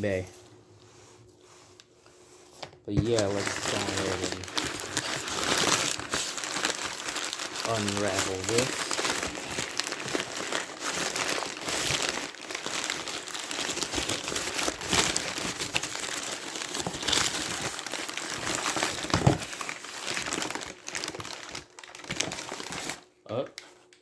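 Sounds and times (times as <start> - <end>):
packaging crinkling: 3.0 - 24.0.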